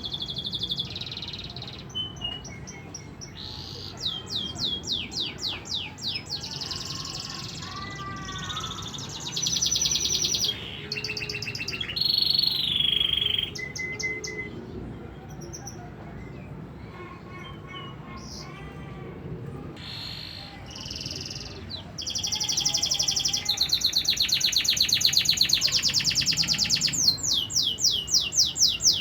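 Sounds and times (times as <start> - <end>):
canary singing: 3.4 - 14.6, 19.8 - 29.0.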